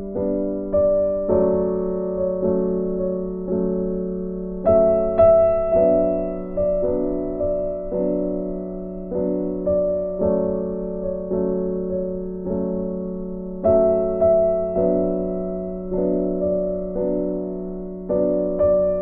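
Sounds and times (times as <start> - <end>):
slow gentle piano piece: 0.0 - 19.0.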